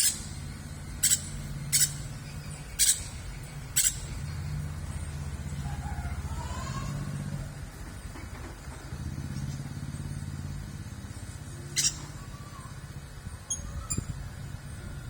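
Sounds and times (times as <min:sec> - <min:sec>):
faint bird chirps: 0:00.0 - 0:06.9, 0:11.1 - 0:15.0.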